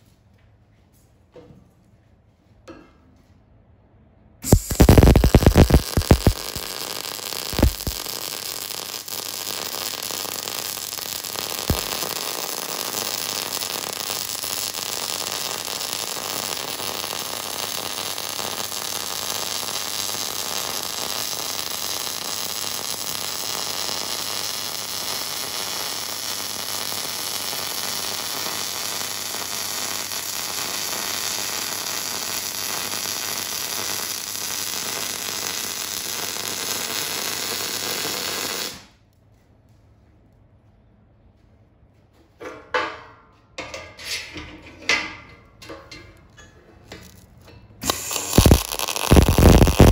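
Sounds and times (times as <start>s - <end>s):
welding arc hissing crackle: 4.4s - 39.0s, 46.9s - 49.9s.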